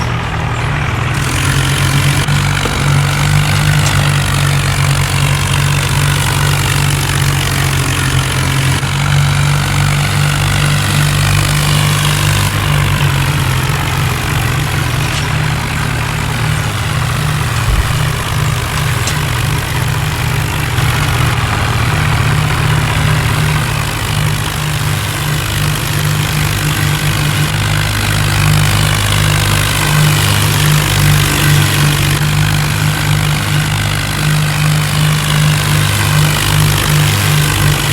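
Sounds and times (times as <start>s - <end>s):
vehicle engine droning: 0.0s - 37.9s.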